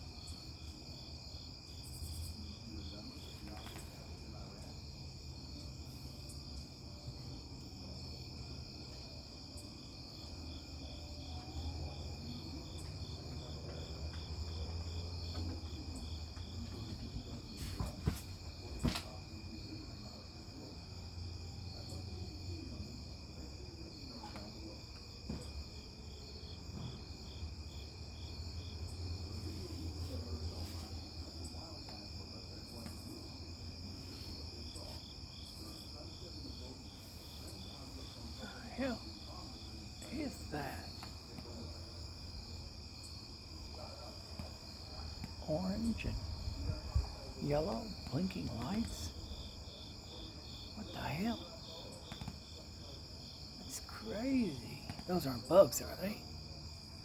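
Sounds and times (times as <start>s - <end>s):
crickets trilling: 0.0s - 57.0s.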